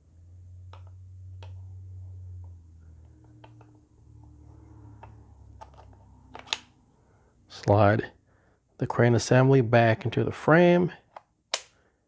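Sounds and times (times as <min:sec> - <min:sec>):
low steady hum: 0:00.0 - 0:12.0
metallic clicks of revolver parts: 0:11.2 - 0:11.8.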